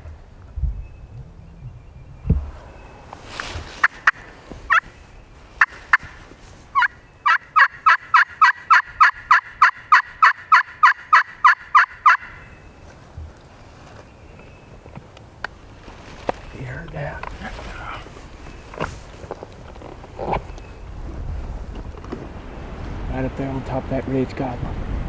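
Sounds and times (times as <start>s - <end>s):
turkey yelping and clucking: 6.8s - 12.6s.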